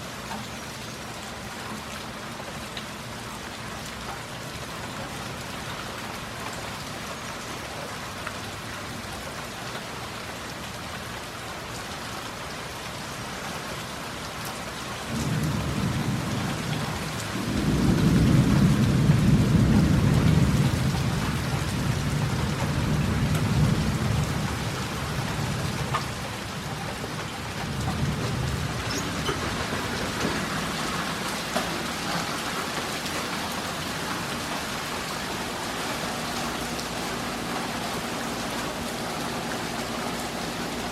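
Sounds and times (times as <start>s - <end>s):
heavy rain falling: 0.0s - 40.9s
rolling thunder: 15.1s - 26.6s, 27.2s - 32.2s.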